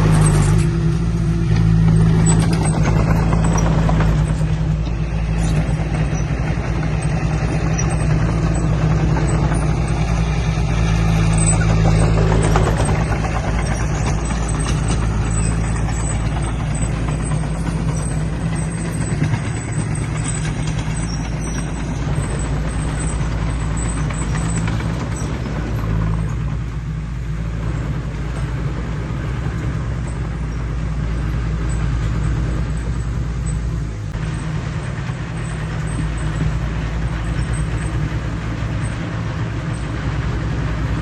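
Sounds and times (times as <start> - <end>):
heavy diesel engine droning: 0.0 - 41.0.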